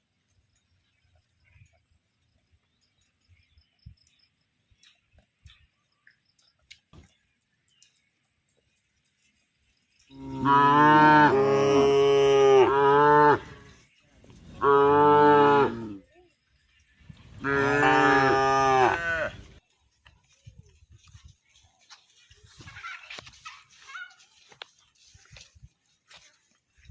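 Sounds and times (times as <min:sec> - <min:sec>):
cow mooing: 0:10.1 - 0:13.6, 0:14.6 - 0:16.0, 0:17.4 - 0:19.4.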